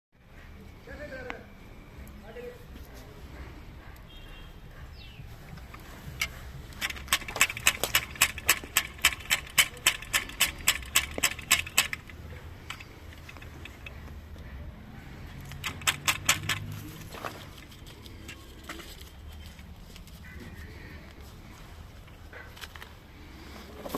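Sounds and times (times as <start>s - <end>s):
ramrod clicking in barrel: 5.6s - 14.0s, 15.4s - 19.1s.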